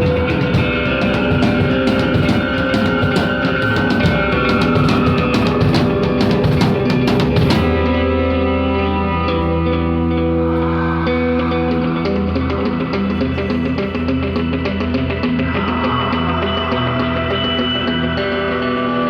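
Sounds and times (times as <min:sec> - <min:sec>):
drum kit: 0:00.0 - 0:08.1
distorted electric guitar: 0:00.0 - 0:19.0.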